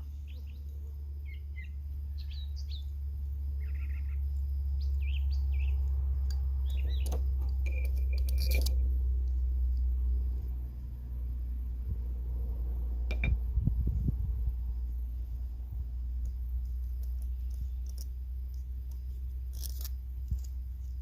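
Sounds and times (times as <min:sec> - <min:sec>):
small birds chirping: 0:00.0 - 0:08.4, 0:14.6 - 0:21.0
steady low rumble: 0:00.0 - 0:21.0.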